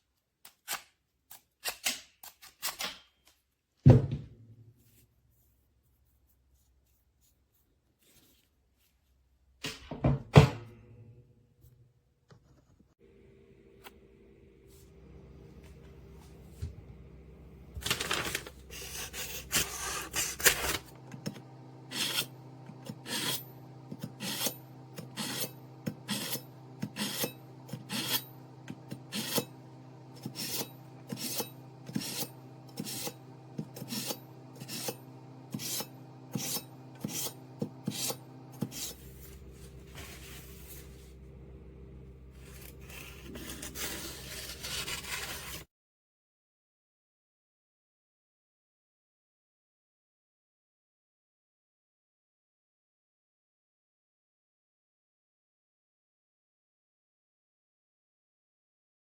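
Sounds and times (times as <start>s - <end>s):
knife drawn through sharpener: 30.2s - 33.2s, 33.8s - 38.9s.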